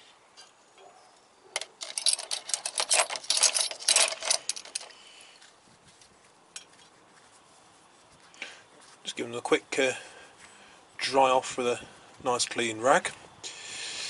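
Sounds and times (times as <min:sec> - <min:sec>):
metal sockets clinking: 0:01.6 - 0:05.0.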